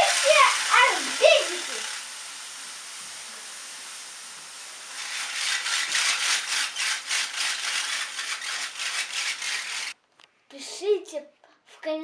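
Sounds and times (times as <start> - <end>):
water beads sizzling in a pan: 0.0 - 6.8.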